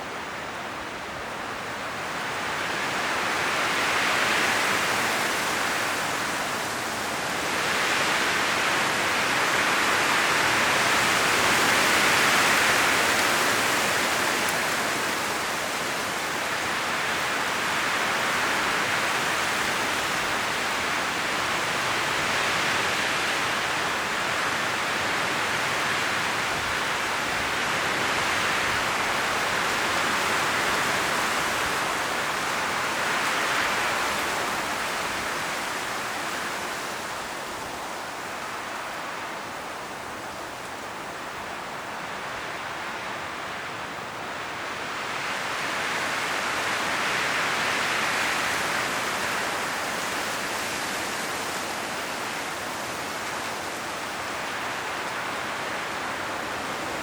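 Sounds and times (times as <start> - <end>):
leaves rustling: 0.0 - 57.0
wind gusting through trees: 0.0 - 57.0.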